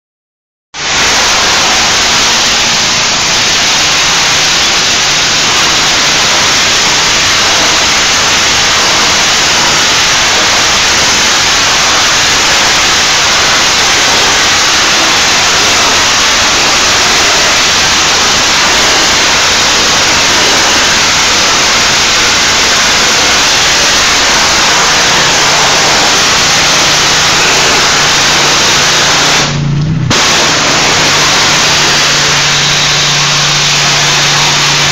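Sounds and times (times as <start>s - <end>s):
pressure washer spraying: 0.8s - 34.9s
low engine hum: 26.8s - 34.9s.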